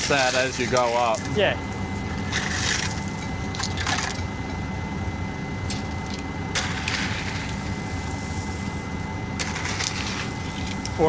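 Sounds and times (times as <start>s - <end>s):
engine humming: 0.0s - 11.0s
short gritty scrapes: 2.0s - 3.0s, 6.6s - 8.7s, 9.4s - 10.9s.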